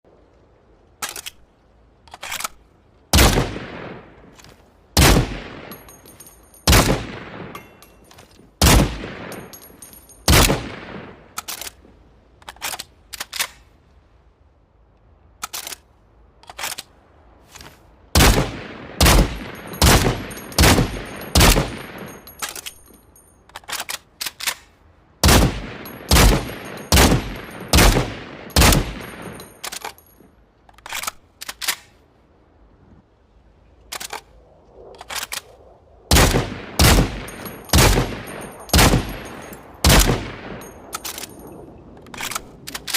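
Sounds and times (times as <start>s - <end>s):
quiet rifle clicks: 0.3s - 2.6s, 3.2s - 13.7s, 14.9s - 16.9s, 17.5s - 32.0s, 33.9s - 42.9s
rifle shots echoing: 3.1s - 4.2s, 5.0s - 7.9s, 8.6s - 11.3s, 18.2s - 22.6s, 25.2s - 29.9s, 36.1s - 41.5s.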